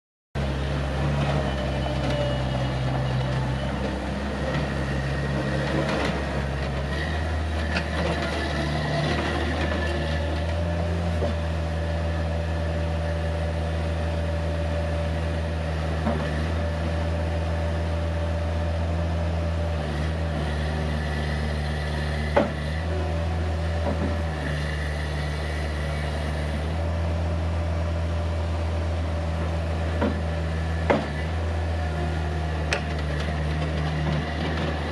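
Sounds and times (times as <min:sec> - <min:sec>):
diesel engine running: 0:00.4 - 0:34.9
machine knocks and clunks: 0:22.3 - 0:22.6, 0:23.8 - 0:24.2, 0:29.9 - 0:31.2.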